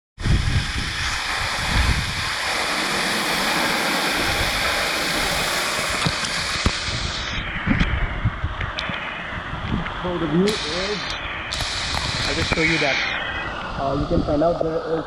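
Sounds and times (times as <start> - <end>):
low rumbling surges: 0.2 - 15.0
waterfall roaring: 2.3 - 7.0.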